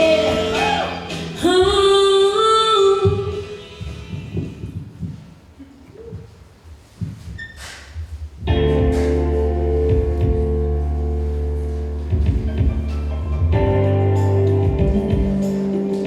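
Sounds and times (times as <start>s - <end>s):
bass: 0.0s - 4.7s, 8.0s - 16.0s
drum hits: 8.5s - 10.6s, 12.1s - 12.9s, 14.6s - 15.5s
organ-like keyboard chords: 8.5s - 16.0s.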